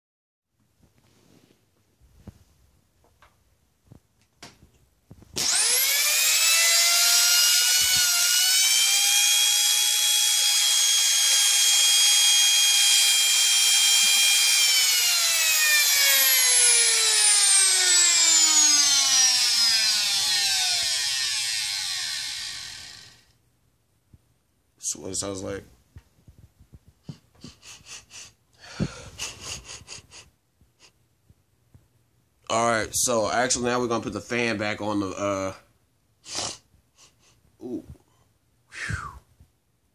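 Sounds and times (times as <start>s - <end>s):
vacuum motor whining: 5.4s - 23.3s.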